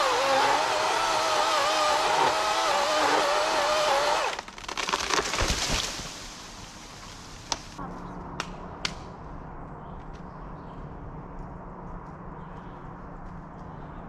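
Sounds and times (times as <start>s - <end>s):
chainsaw running: 0.0s - 5.2s
wood cracking and splintering: 0.0s - 6.6s.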